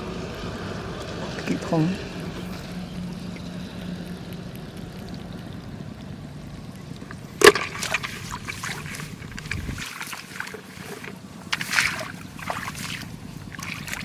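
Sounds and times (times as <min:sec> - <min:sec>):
steady low hum: 0:00.0 - 0:14.0
water trickling and splashing: 0:00.0 - 0:14.0
sharp splash: 0:07.4 - 0:14.0.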